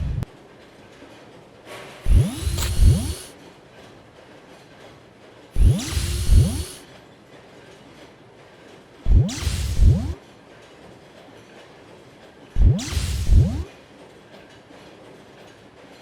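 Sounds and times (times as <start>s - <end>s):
low thumps sliding upward: 0.0s - 0.3s, 2.0s - 3.3s, 5.6s - 6.8s, 9.1s - 10.2s, 12.6s - 13.7s.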